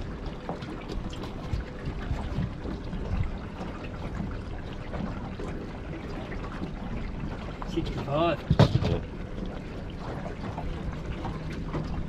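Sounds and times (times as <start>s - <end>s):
water trickling and lapping: 0.0s - 12.0s.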